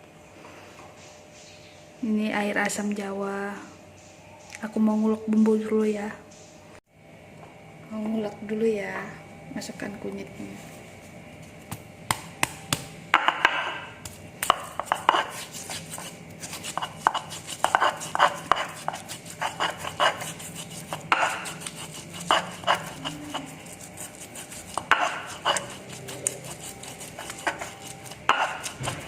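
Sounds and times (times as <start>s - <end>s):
mortar and pestle pounding: 12.1s - 29.0s
pestle scraping grinding strokes: 13.2s - 29.0s.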